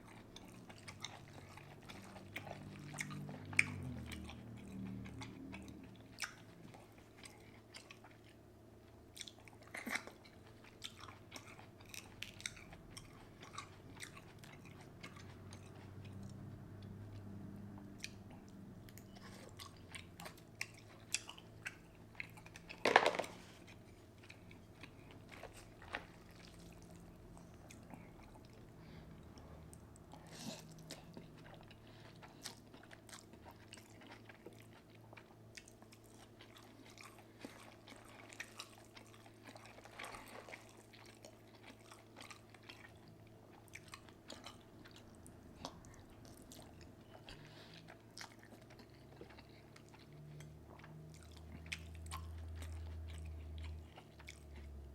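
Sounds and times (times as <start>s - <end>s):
person chewing and biting: 0.1s - 8.4s, 9.2s - 54.8s.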